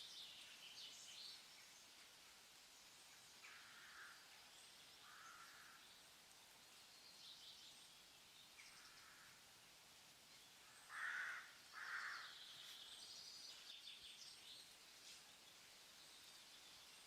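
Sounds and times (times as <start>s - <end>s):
soft steady hiss: 0.0s - 17.0s
distant bird calls: 2.8s - 6.2s, 6.8s - 9.5s, 10.4s - 15.2s.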